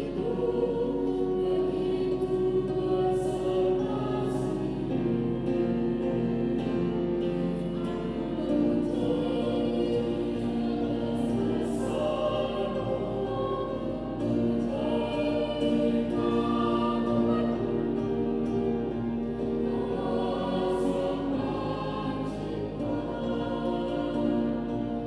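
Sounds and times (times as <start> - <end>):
choir singing sustained notes: 0.0 - 25.0.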